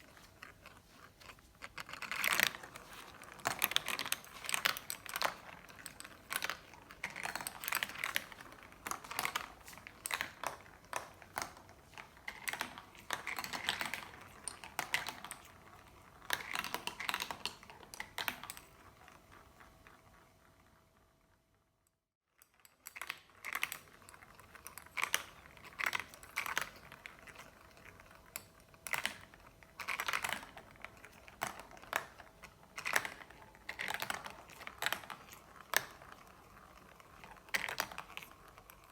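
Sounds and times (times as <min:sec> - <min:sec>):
marbles rolling and clicking: 0:00.0 - 0:21.0, 0:22.4 - 0:38.9
marbles clacking: 0:01.6 - 0:18.9.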